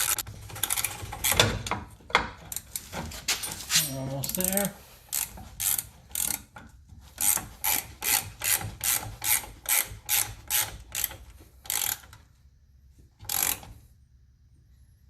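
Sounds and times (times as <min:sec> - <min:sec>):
ratchet wrench clicking: 0:05.1 - 0:06.5, 0:07.2 - 0:12.2, 0:13.3 - 0:13.7.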